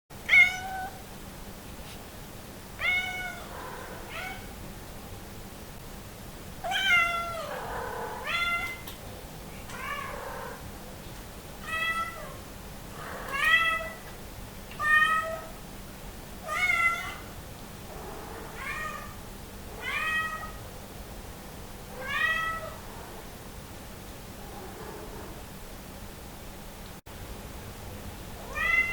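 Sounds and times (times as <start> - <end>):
cat meowing: 0.2 - 1.0, 2.8 - 4.6, 6.6 - 8.9, 9.7 - 10.6, 11.6 - 12.4, 13.0 - 14.1, 14.7 - 15.5, 16.4 - 17.4, 18.2 - 19.2, 19.8 - 20.6, 21.9 - 23.3, 28.5 - 28.9.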